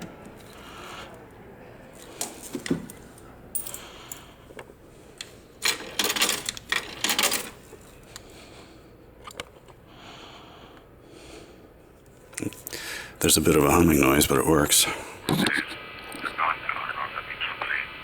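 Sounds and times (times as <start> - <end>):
coins clinking through payphone: 2.0 - 4.4, 5.2 - 8.0.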